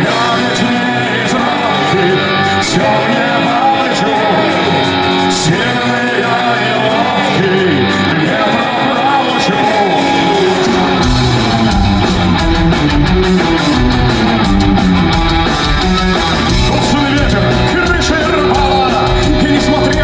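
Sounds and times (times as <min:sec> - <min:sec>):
live rock band playing: 0:00.0 - 0:20.0
stepping bass line: 0:09.4 - 0:20.0.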